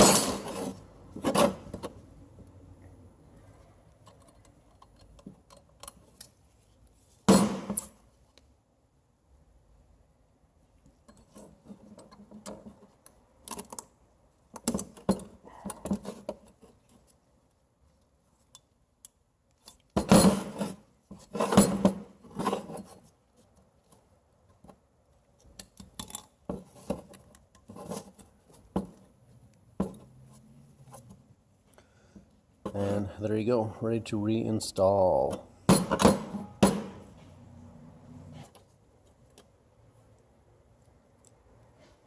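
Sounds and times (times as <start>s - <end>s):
metal tools clinking and scraping: 0.0s - 1.9s.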